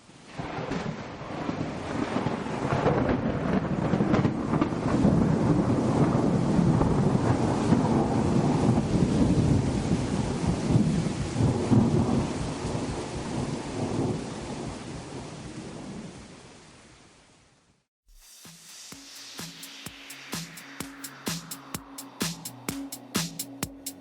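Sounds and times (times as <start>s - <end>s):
steady rain: 0.0s - 23.3s
rolling thunder: 0.3s - 16.0s.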